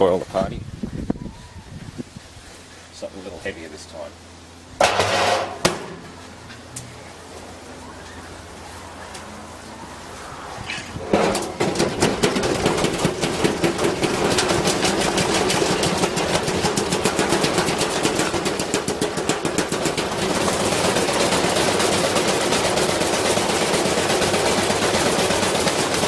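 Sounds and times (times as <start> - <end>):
metal weight hammering in washing machine: 4.8 - 6.0, 11.1 - 26.0.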